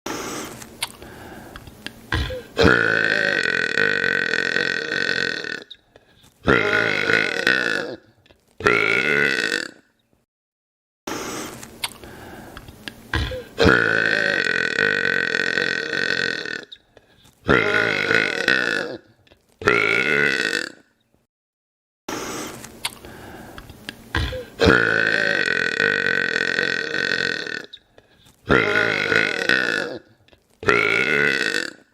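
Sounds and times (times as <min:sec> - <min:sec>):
man burping loudly: 0:02.2 - 0:05.8, 0:06.4 - 0:09.9, 0:13.2 - 0:16.7, 0:17.5 - 0:20.9, 0:24.2 - 0:27.8, 0:28.5 - 0:31.9.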